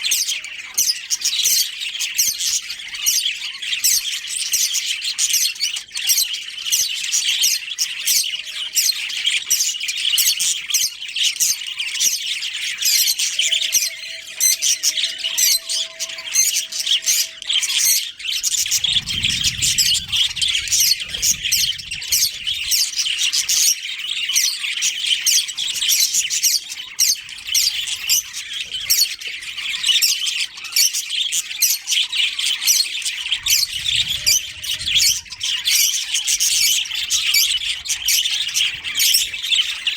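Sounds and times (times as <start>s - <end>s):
budgerigars chirping and squawking: 0.0s - 39.9s
low rumble: 18.4s - 23.2s, 33.4s - 35.8s.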